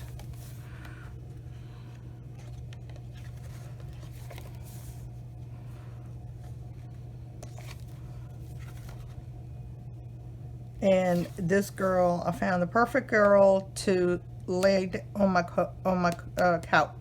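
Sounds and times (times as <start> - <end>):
paper pages rustling: 0.0 - 9.3, 10.9 - 12.4
low electrical hum: 0.0 - 17.0.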